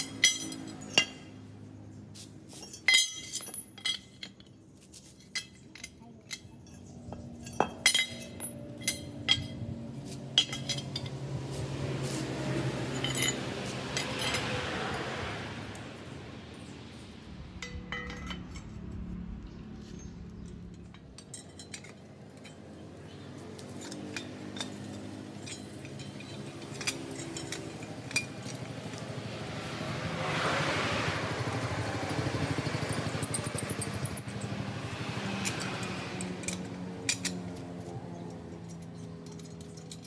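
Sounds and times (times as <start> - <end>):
metal clinks and taps: 0.0 - 1.4, 2.6 - 11.2, 12.9 - 14.5, 17.6 - 19.0, 20.4 - 29.3, 31.8 - 34.7, 35.4 - 40.0.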